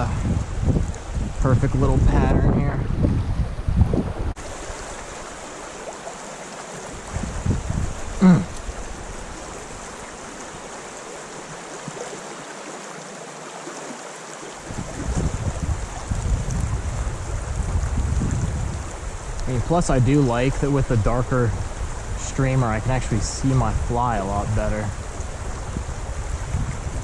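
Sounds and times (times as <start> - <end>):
wind rumbling on microphone: 0.0 - 6.2, 6.8 - 11.1, 14.6 - 27.0
creek water running: 0.0 - 27.0.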